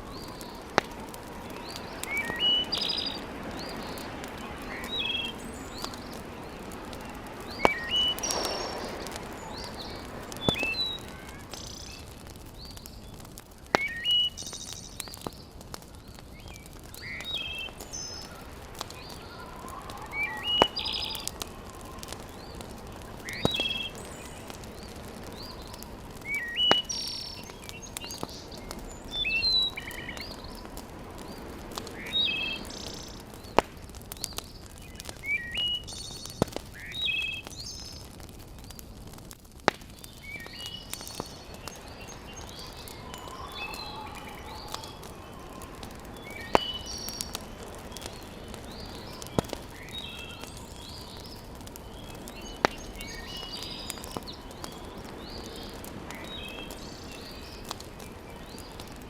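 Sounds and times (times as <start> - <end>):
wood fire crackling pops: 0.0 - 59.0
bird chirping: 1.4 - 13.2, 13.8 - 15.2, 16.4 - 21.4, 22.1 - 30.7, 40.1 - 57.7.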